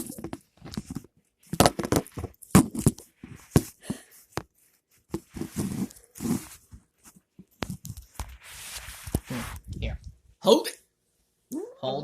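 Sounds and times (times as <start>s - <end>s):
handling taps and knocks: 0.0s - 5.9s.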